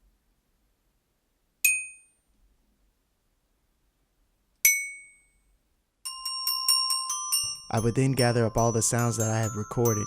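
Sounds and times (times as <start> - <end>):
glockenspiel notes: 6.0 - 10.0.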